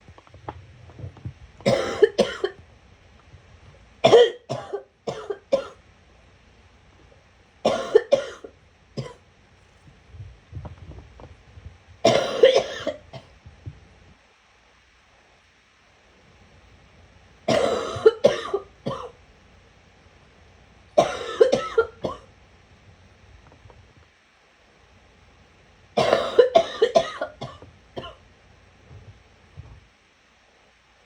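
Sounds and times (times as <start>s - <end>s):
person gagging cough: 1.7s - 2.5s, 7.7s - 8.4s, 12.0s - 13.0s, 17.5s - 19.1s, 21.0s - 22.2s, 26.0s - 28.2s.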